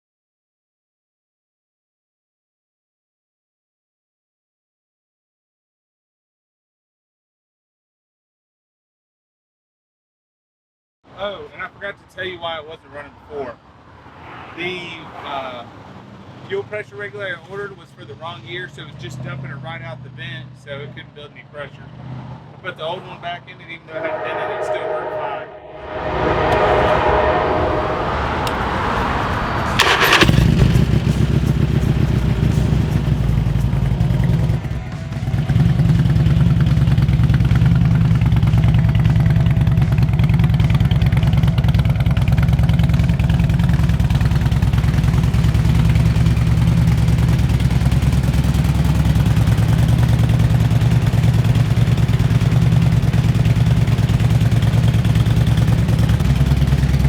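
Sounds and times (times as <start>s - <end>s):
motorcycle engine cranking and idling: 29.7s - 57.0s.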